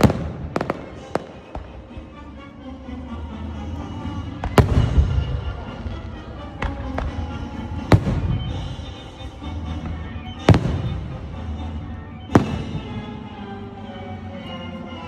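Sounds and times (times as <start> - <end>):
fireworks bursting: 0.0 - 1.9, 4.4 - 13.5
music playing: 0.0 - 15.0.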